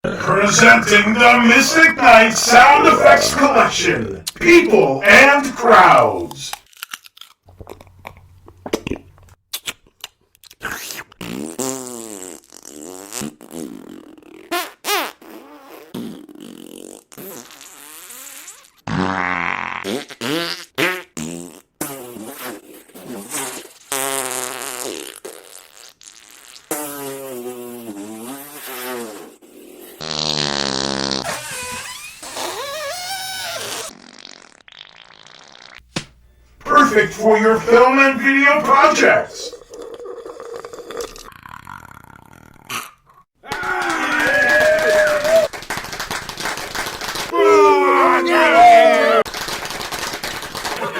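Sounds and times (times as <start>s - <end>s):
fart sound effects: 10.6s - 35.8s.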